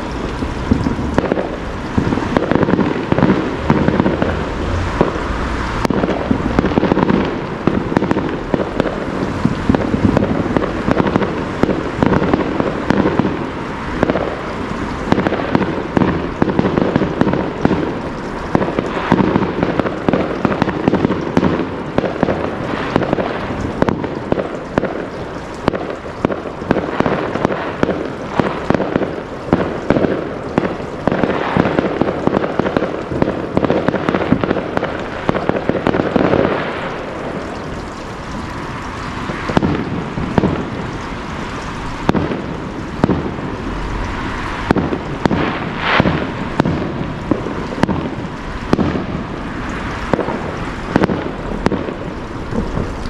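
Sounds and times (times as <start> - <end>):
fireworks bangs and crackles: 0.0 - 53.0.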